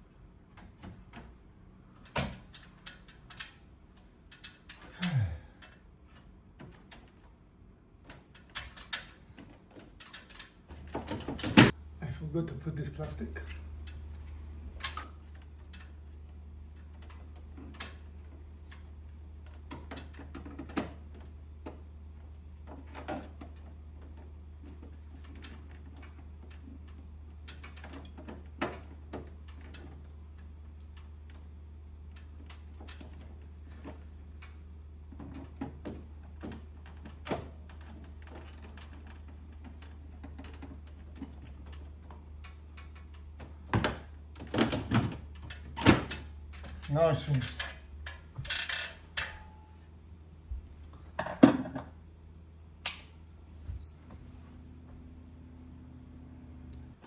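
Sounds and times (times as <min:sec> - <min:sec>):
steady low hum: 0:03.6 - 0:06.2.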